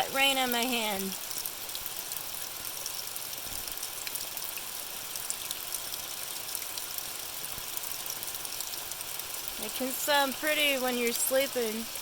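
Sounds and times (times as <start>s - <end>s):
steady rain falling: 0.0s - 12.0s.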